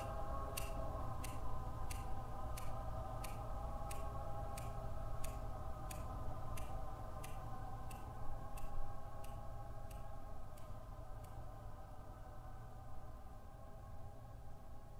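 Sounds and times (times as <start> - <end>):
low drone of held tones: 0.0 - 14.9
clock-like ticking: 0.6 - 8.0.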